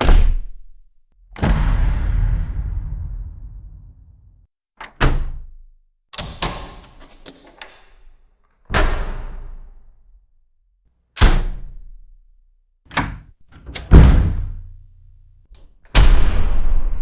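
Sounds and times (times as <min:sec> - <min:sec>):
doors shutting with thud: 0:00.0 - 0:00.7, 0:01.4 - 0:02.3, 0:08.7 - 0:09.8, 0:11.2 - 0:11.9, 0:12.9 - 0:14.8
door latch click: 0:04.8 - 0:05.5, 0:06.2 - 0:08.1, 0:11.2 - 0:11.8, 0:12.9 - 0:14.8.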